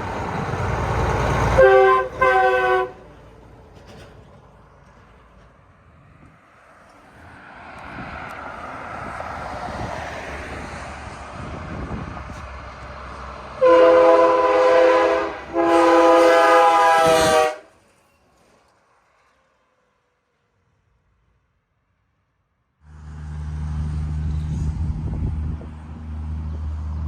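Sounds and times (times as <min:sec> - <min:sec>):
train rumble: 0:00.0 - 0:20.5, 0:22.8 - 0:27.0
locomotive air horn blasts: 0:01.6 - 0:03.1, 0:13.6 - 0:17.7.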